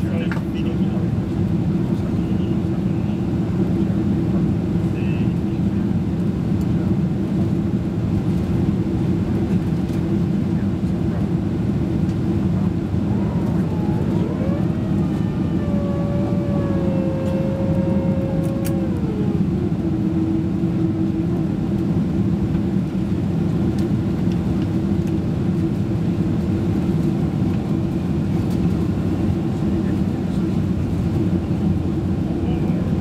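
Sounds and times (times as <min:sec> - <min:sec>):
aircraft cabin engine rush: 0:00.0 - 0:33.0
whining tone: 0:12.2 - 0:22.1.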